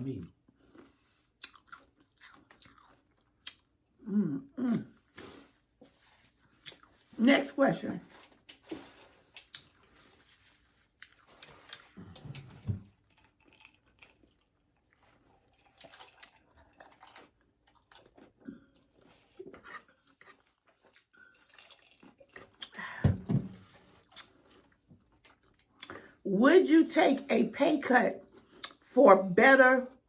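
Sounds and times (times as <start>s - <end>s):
chewing nachos: 0.2s - 7.2s, 8.1s - 26.3s, 28.2s - 28.9s
tortilla chips crunching: 0.6s - 3.7s, 8.5s - 22.8s.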